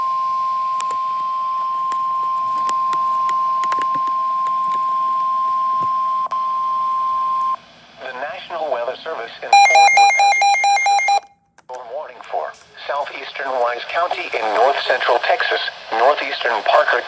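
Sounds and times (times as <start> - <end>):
steady alarm tone: 9.5 - 11.3.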